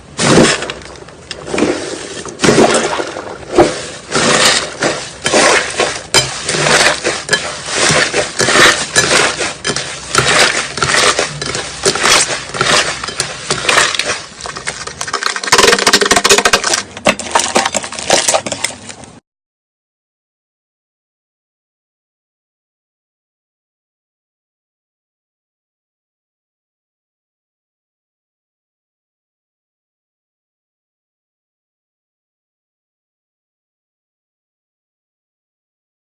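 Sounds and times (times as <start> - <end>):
slime crackling and popping: 4.0 - 19.0.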